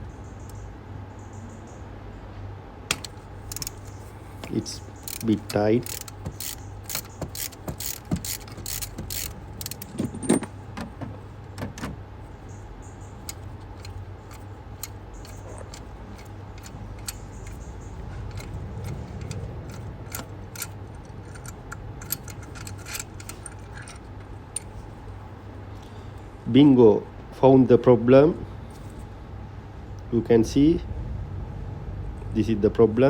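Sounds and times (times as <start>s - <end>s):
steady low hum: 0.0s - 33.0s
ratchet clicking on metal: 2.9s - 10.5s, 13.2s - 24.8s.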